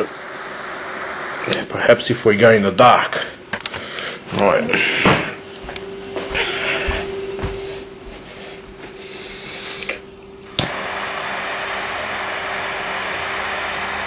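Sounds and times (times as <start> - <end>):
torch lighter click: 9.9 - 10.8.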